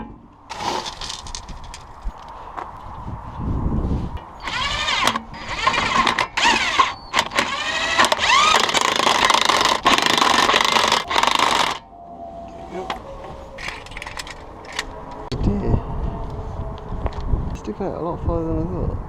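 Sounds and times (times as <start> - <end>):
power tool tightening wheel nuts: 4.4 - 11.8.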